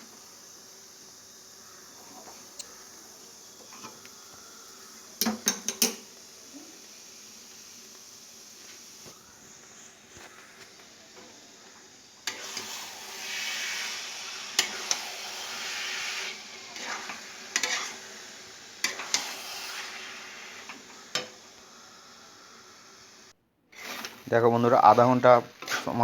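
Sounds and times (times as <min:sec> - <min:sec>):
coconut sizzling in a pan: 0:00.0 - 0:26.0
utensil scraping a pan: 0:12.3 - 0:22.0, 0:23.8 - 0:26.0.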